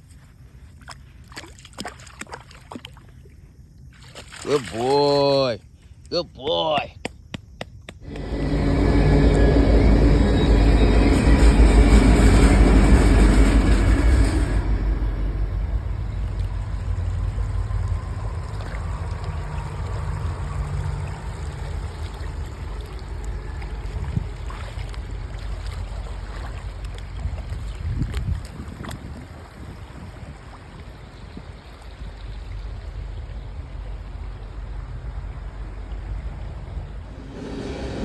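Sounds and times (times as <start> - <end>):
motorboat engine passing: 8.0 - 27.8, 35.5 - 38.0.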